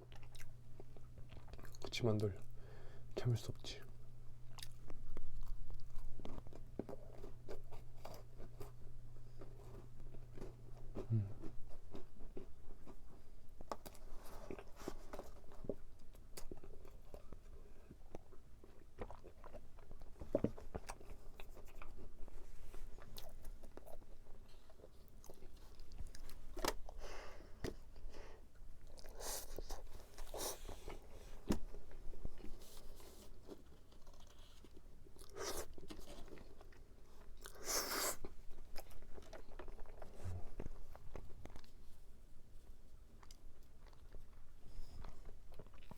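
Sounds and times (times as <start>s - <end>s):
chewing with wet mouth clicks: 0.0s - 2.5s, 4.4s - 22.4s, 23.0s - 27.0s, 33.4s - 41.9s, 43.1s - 45.9s.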